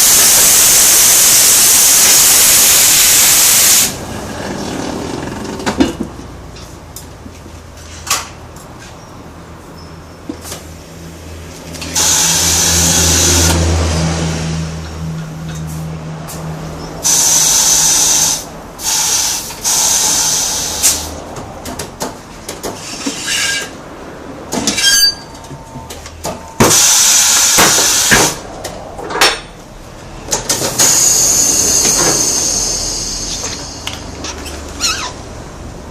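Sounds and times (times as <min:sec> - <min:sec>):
compressed air hissing: 0:00.0 - 0:04.0, 0:17.0 - 0:21.2, 0:26.6 - 0:28.4, 0:30.7 - 0:34.0.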